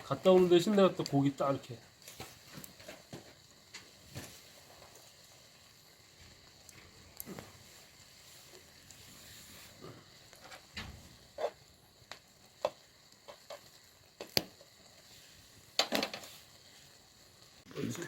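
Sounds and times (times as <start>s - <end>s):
food sizzling in a frying pan: 0.0s - 18.0s.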